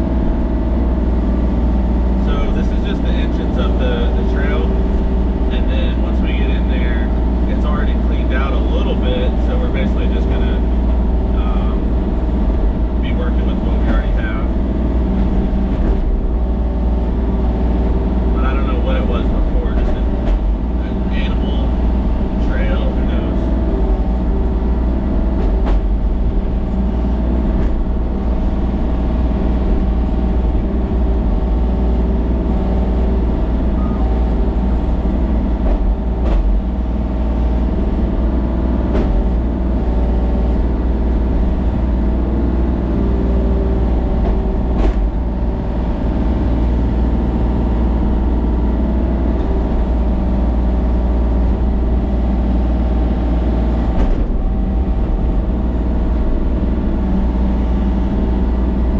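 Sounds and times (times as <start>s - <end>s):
vehicle engine running: 0.0s - 58.9s
faint engine knocks: 2.2s - 28.6s, 32.4s - 49.9s.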